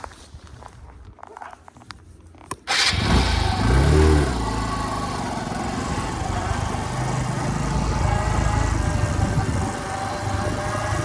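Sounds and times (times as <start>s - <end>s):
vehicle engine starting and revving: 2.7s - 11.0s.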